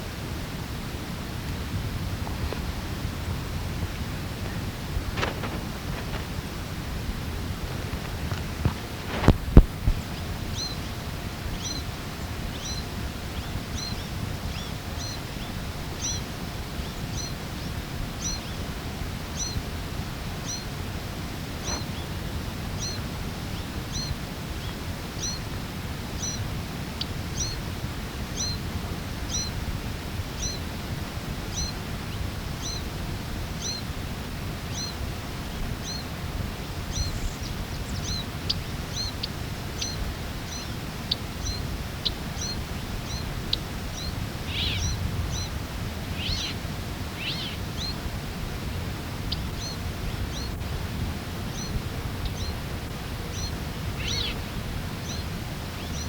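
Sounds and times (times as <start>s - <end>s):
outdoor hiss: 0.0s - 56.0s
small bird chirping: 10.0s - 10.9s, 11.5s - 11.9s, 12.5s - 16.2s, 16.8s - 18.6s, 19.4s - 19.6s, 20.4s - 20.7s, 22.8s - 25.4s, 27.0s - 27.6s, 28.4s - 28.6s, 30.4s - 30.6s, 31.5s - 31.8s, 32.6s - 32.8s, 35.8s - 36.1s, 36.8s - 46.6s, 47.2s - 48.0s, 49.3s - 50.6s, 53.3s - 54.4s, 55.0s - 56.0s.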